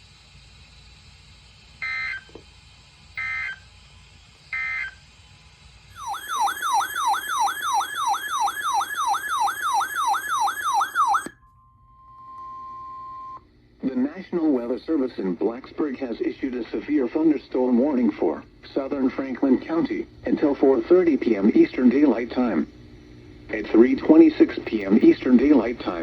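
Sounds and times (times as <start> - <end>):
warbling digital data tones: 6.0 - 11.3
siren-like attention tone: 6.0 - 13.4
steady single tone: 11.4 - 13.4.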